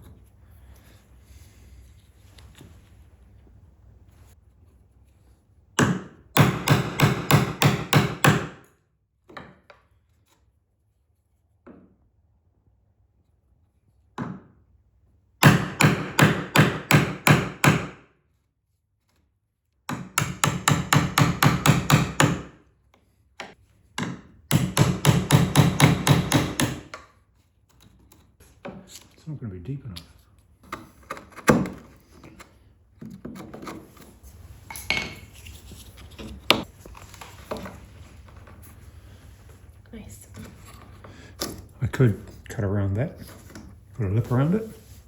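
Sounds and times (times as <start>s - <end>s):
rapid hammering: 5.8s - 8.6s, 15.4s - 18.0s, 19.9s - 22.5s, 24.0s - 26.9s.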